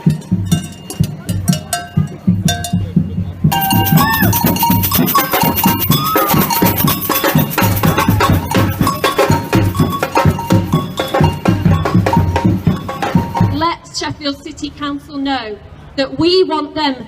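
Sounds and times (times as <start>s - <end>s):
percussion music with steady beat: 0.0s - 13.8s
cowbell-like strikes: 3.5s - 13.6s.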